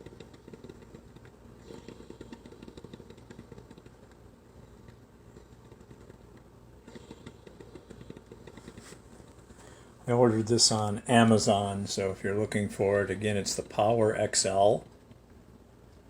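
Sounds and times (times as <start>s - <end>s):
coffee maker gurgling: 0.0s - 9.0s.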